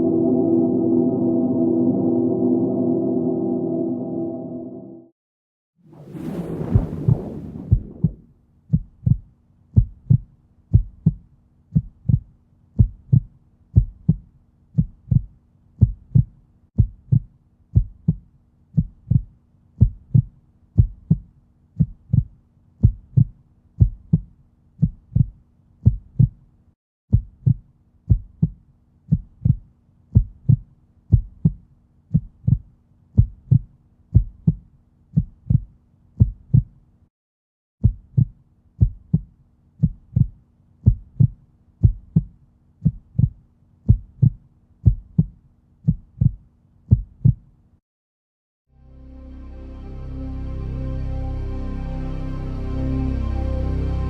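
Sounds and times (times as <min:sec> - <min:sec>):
low heartbeat-like thuds: 0:06.5 - 0:26.4, 0:27.1 - 0:36.8, 0:37.8 - 0:47.5.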